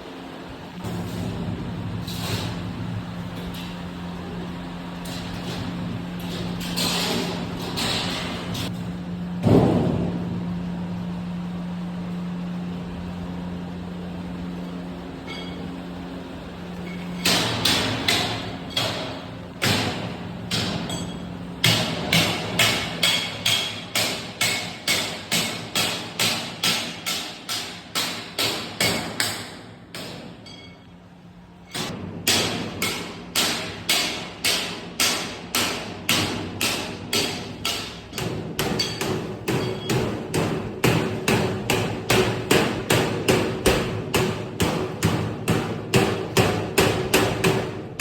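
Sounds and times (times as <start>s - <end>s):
hammer on sheet metal: 17.2s - 30.8s, 31.7s - 48.0s.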